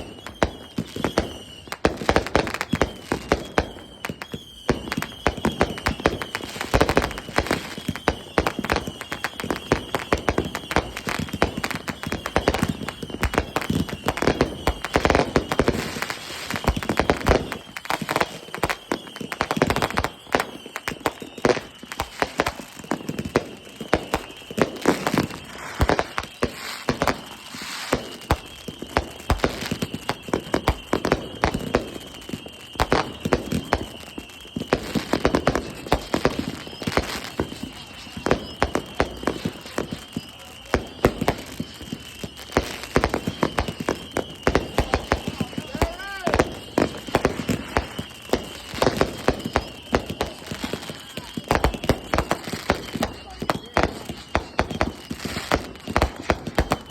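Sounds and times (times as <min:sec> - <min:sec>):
fireworks crackling and banging: 0:00.0 - 0:56.9
heavy firework booms: 0:00.0 - 0:56.9.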